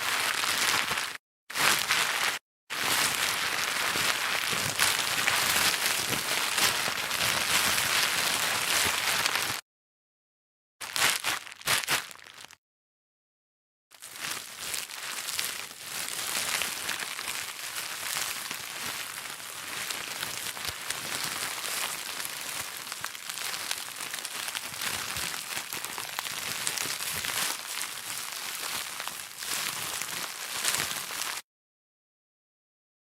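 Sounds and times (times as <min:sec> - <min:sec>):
plastic bag crinkling: 0:10.8 - 0:12.6, 0:14.2 - 0:31.4.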